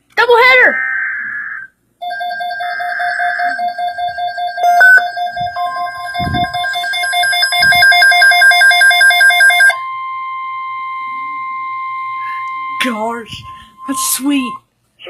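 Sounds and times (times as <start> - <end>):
steady warning tone: 0.5 - 14.6
electronic alarm beeping rapidly: 2.0 - 9.9, 11.6 - 14.6.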